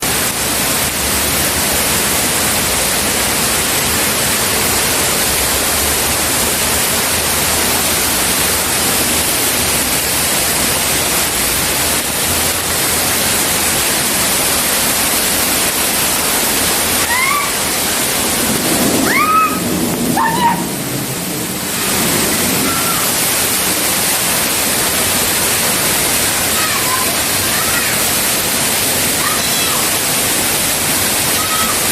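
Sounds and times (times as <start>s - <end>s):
waterfall rushing: 0.0s - 31.9s
person yelping: 20.2s - 20.7s.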